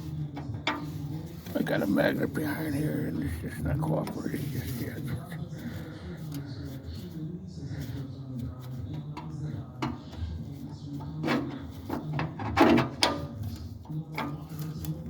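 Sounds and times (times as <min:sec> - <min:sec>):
metal clanks and knocks: 0:11.2 - 0:13.3.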